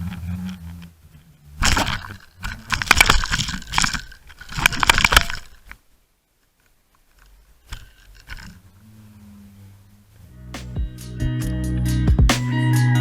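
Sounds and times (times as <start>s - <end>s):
underwater crunching and scraping: 0.0s - 5.8s, 6.9s - 8.8s.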